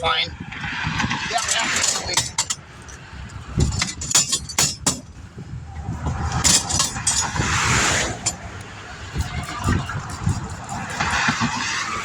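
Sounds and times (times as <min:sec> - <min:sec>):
traffic: 0:00.0 - 0:12.0
metallic tool clanks: 0:01.3 - 0:03.0, 0:03.6 - 0:05.1, 0:06.4 - 0:07.4
vehicle passing close by: 0:05.7 - 0:10.2.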